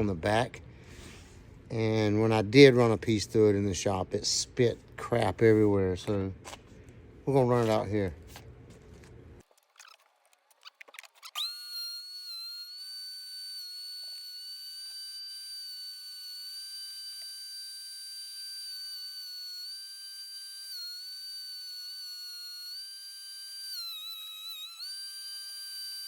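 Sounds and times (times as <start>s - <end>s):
thickness planer whining: 11.2s - 26.0s.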